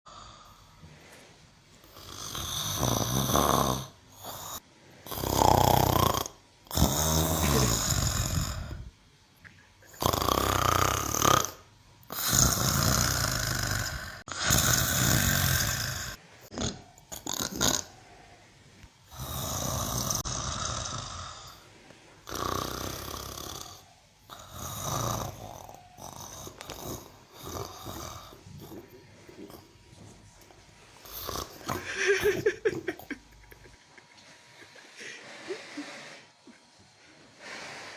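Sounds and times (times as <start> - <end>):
cow snoring: 1.9 - 8.9, 10.0 - 18.2, 19.1 - 21.6, 22.2 - 29.8, 31.0 - 31.9.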